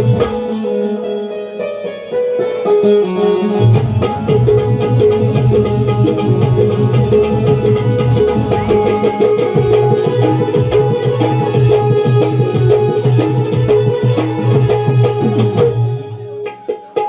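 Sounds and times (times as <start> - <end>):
music with percussive beat: 0.0 - 17.0
sustained bass: 3.6 - 11.8.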